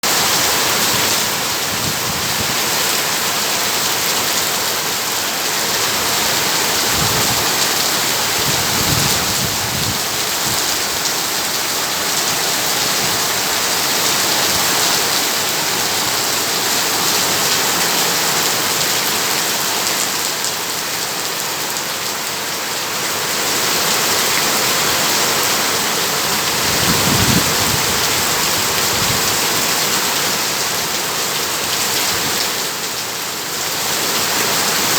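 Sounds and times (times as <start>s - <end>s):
heavy rain hissing: 22.7s - 34.9s.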